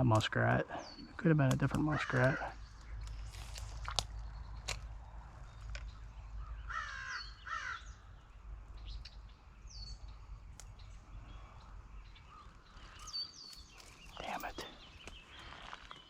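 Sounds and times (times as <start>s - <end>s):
bird giving harsh calls: 0.8s - 3.3s, 6.4s - 7.9s.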